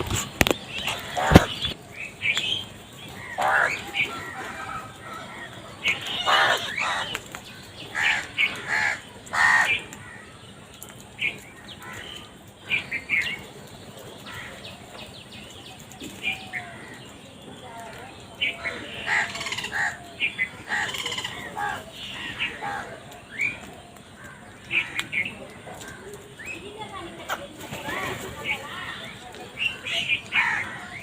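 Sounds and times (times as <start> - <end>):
crows cawing: 3.2 - 10.5, 14.2 - 14.7, 18.5 - 23.5, 24.1 - 26.2, 28.7 - 31.0.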